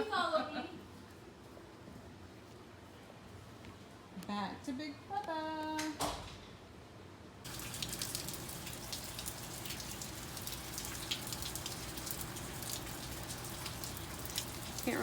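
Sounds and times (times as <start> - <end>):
rain hissing: 7.5 - 15.0
raindrops ticking: 7.5 - 15.0.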